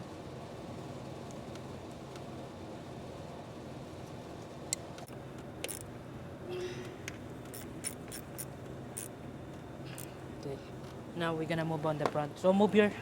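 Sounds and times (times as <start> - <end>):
steady low hum: 0.0 - 13.0
metallic clicks of hand tools: 7.5 - 9.1.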